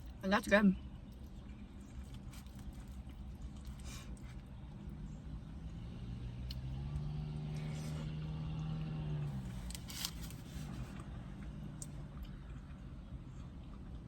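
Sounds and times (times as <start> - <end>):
passing vehicle engine drone: 4.8 - 13.6.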